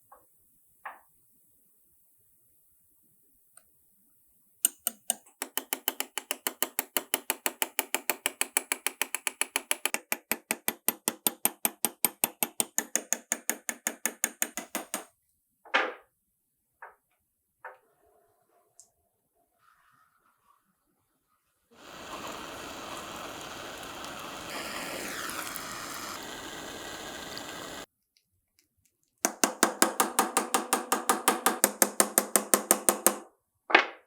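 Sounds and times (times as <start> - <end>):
rapid mechanical clicking: 21.8 - 27.9.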